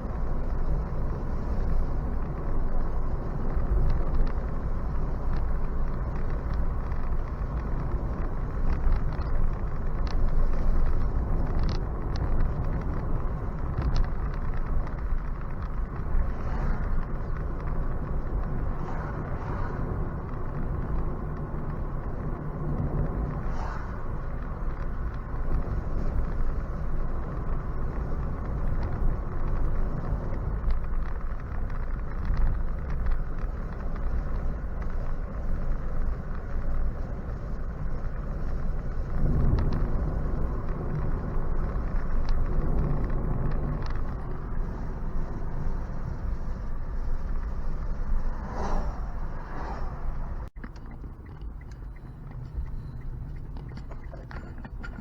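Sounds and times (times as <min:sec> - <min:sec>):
road and tyre noise: 0:00.0 - 0:55.0.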